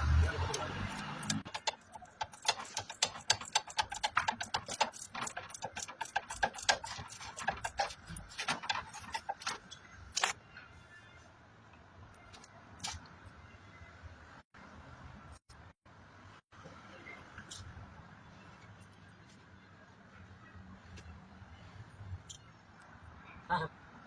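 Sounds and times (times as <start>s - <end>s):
rapid clicks and taps: 0.1s - 9.7s.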